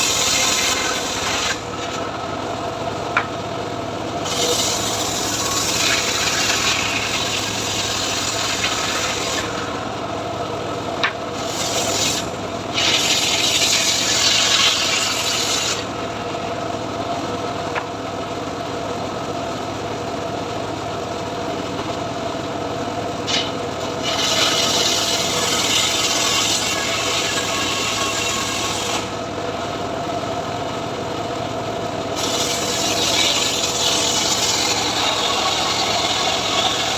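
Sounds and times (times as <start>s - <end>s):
saw blade cutting wood: 0.0s - 2.2s, 4.2s - 9.8s, 11.0s - 16.3s, 23.2s - 29.2s, 32.2s - 36.9s.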